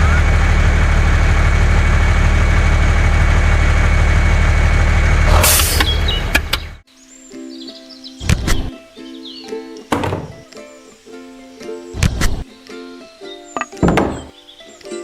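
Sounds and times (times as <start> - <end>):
truck engine idling: 0.0 - 6.8.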